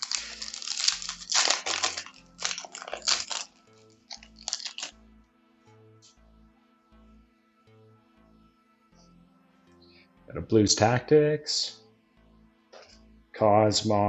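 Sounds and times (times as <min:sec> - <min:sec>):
foil wrapper crinkling: 0:00.0 - 0:04.9
quiet background music: 0:00.0 - 0:14.0.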